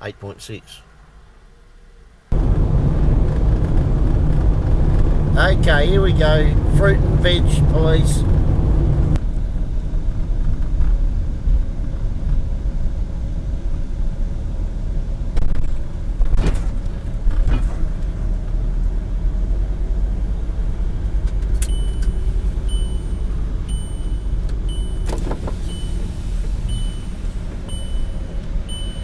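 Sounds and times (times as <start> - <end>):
engine and road rumble: 0.0 - 29.0
high electronic beep: 21.7 - 26.1, 26.7 - 29.0.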